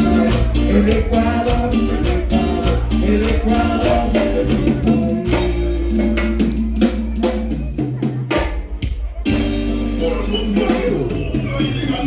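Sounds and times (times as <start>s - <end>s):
maracas shaking: 0.0s - 7.2s
latin dance band playing: 0.0s - 12.0s.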